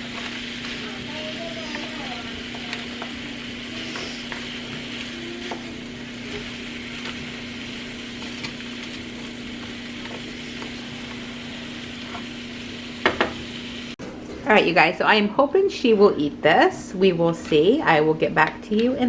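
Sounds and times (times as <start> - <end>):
food sizzling in a frying pan: 0.0 - 14.0.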